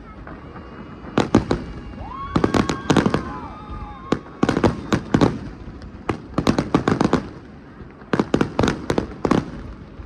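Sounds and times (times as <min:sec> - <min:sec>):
fireworks bursting: 0:00.0 - 0:10.0.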